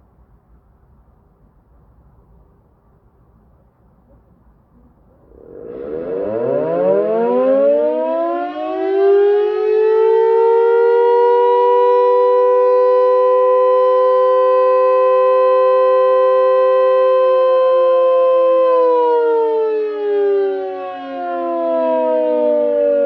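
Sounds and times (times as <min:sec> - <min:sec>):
motor siren winding up: 0:05.3 - 0:11.0.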